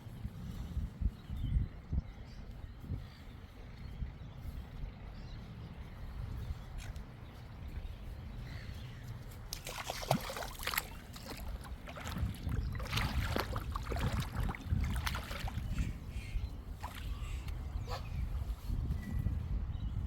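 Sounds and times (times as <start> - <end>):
water splashing and sloshing: 9.0 - 18.7.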